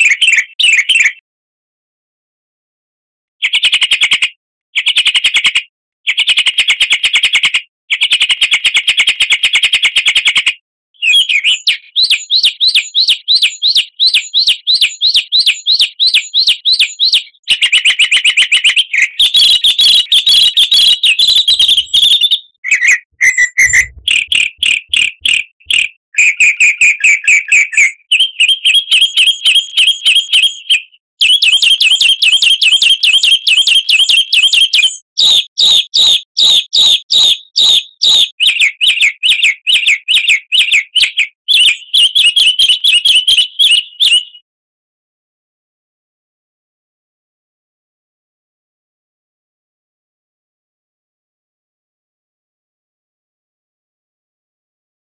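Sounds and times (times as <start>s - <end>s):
songbird trilling: 11.0s - 30.8s, 34.1s - 44.4s.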